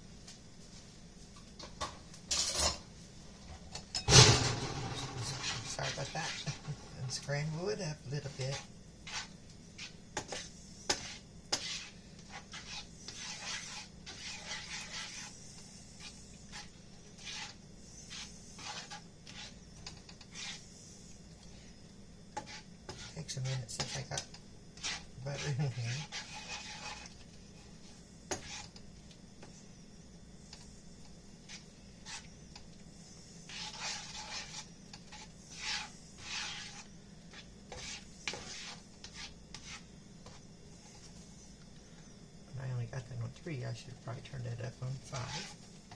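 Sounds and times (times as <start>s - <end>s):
spatula scraping a frying pan: 4.1s - 21.7s, 22.3s - 28.8s, 31.4s - 41.3s, 44.8s - 45.9s.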